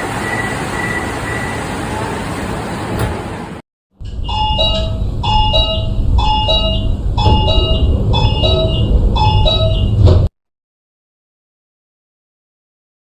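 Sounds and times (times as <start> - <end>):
falling two-note electronic chime: 4.0 - 10.0
steady low rumble: 4.0 - 10.3.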